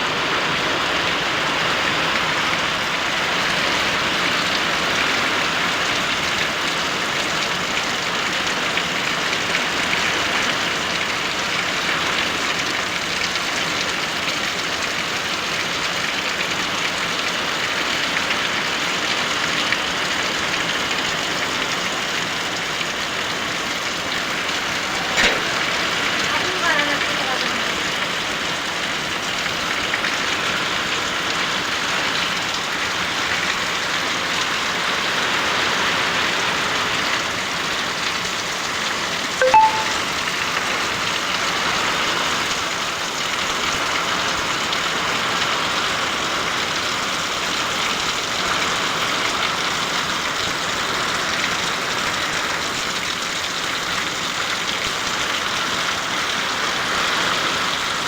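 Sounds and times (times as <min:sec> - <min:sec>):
heavy rain falling: 0:00.0 - 0:39.4, 0:40.7 - 0:58.0
brief short sound: 0:39.4 - 0:40.1.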